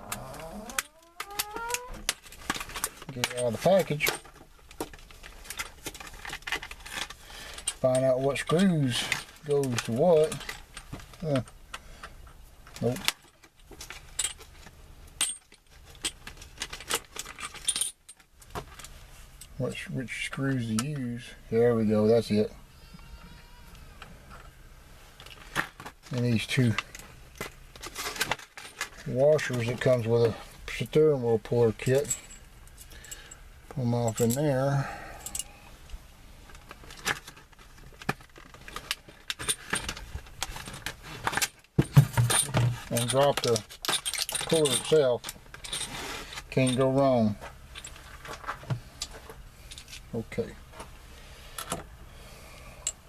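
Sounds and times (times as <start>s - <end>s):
small metal parts clinking: 0.0s - 11.6s, 12.7s - 19.6s, 31.7s - 35.6s, 36.5s - 50.2s
small screws clinking on metal: 15.1s - 19.6s, 34.0s - 34.6s, 35.2s - 35.6s, 40.7s - 47.0s.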